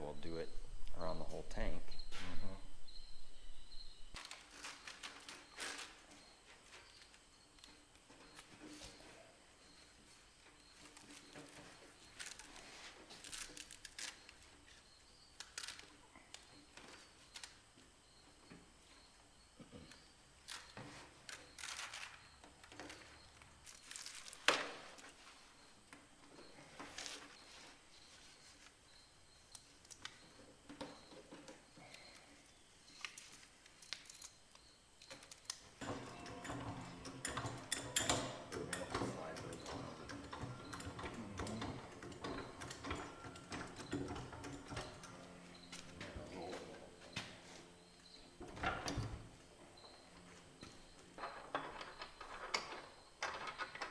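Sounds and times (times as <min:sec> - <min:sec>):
clatter of parts: 0:10.8 - 0:14.8, 0:20.5 - 0:25.4, 0:35.0 - 0:46.0, 0:51.1 - 0:53.9.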